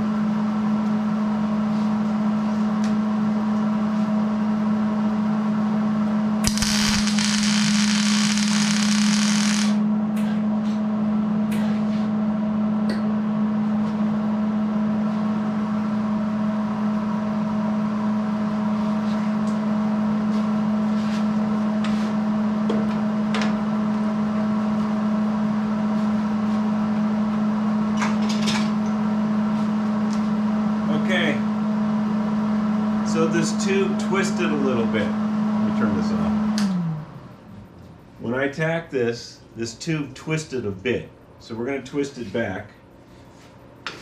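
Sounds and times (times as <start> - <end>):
electrical hum with whine: 0.0 - 44.0
welding arc hissing and crackling: 6.4 - 9.8.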